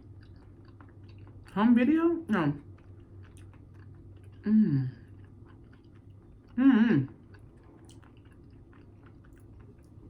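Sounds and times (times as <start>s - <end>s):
person chewing: 0.0s - 1.6s, 2.6s - 10.0s
person humming hmm: 4.5s - 5.0s.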